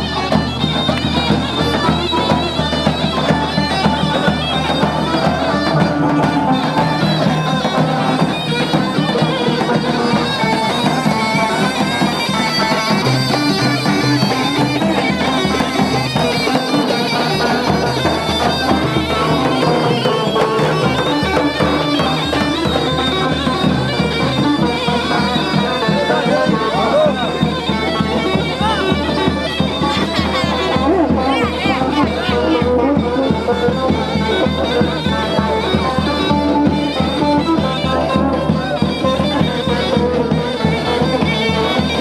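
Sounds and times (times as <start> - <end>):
reed wind instrument folk melody: 0.0 - 42.0
steady drum beat: 0.0 - 42.0.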